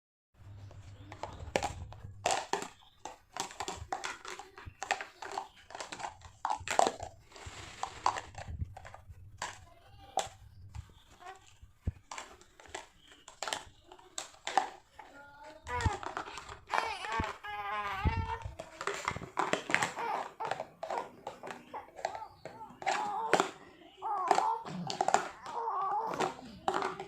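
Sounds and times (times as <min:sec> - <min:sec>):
plastic toys clattering: 0:00.6 - 0:27.0
baby fussing: 0:15.7 - 0:27.0.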